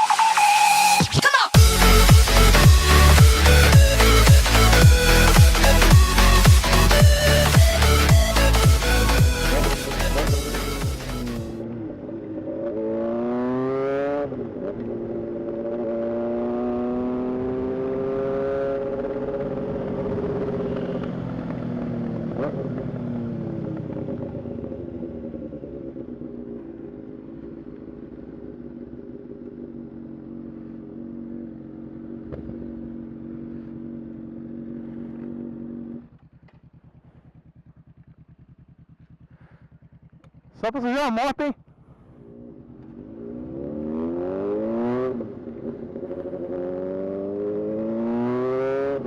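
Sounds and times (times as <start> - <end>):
motorcycle engine accelerating: 1.1 - 49.0.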